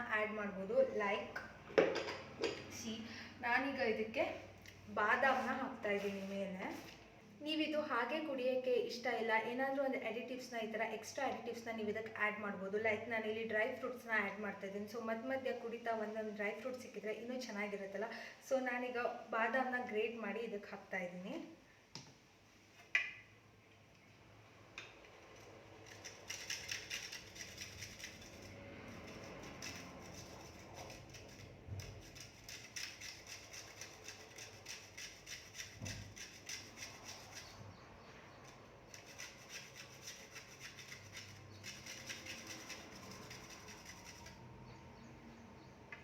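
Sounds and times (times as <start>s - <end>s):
almond grating rasps: 25.2s - 44.7s.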